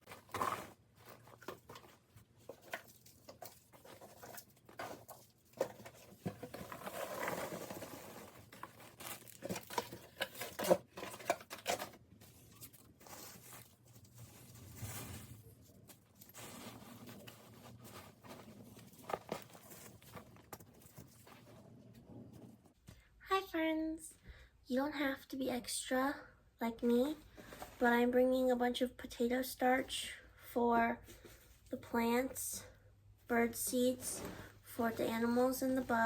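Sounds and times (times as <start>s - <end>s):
bags crinkling and rustling: 0.0s - 21.5s.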